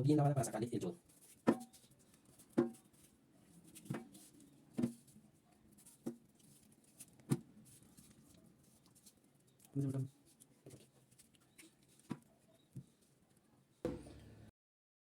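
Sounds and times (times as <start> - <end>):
knife knocking on cutting board: 13.9 - 14.2.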